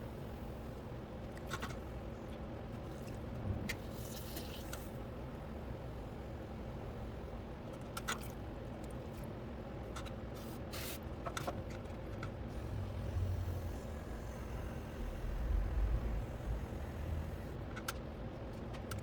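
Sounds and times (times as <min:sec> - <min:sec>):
potter's wheel humming: 0:12.5 - 0:17.6.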